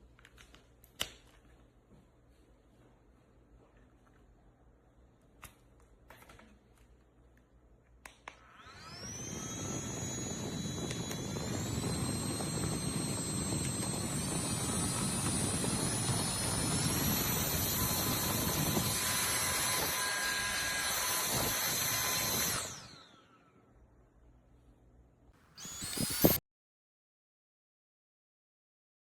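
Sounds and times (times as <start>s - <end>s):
handheld fan whine and air rush: 8.2s - 23.5s, 25.6s - 26.4s.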